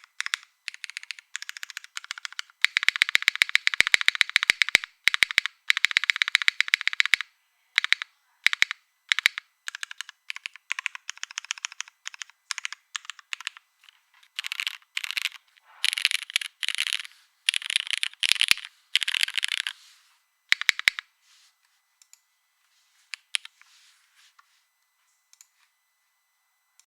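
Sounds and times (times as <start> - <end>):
mechanical keyboard typing: 0.0 - 19.8, 20.5 - 21.1, 23.1 - 23.6.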